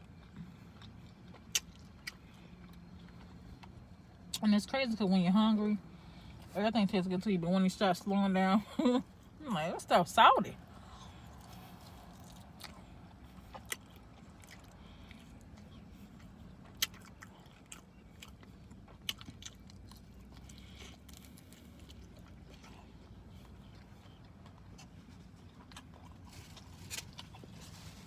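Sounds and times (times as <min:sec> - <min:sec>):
chewing and biting: 0:00.0 - 0:04.4, 0:10.6 - 0:28.0
steady low hum: 0:00.0 - 0:28.0.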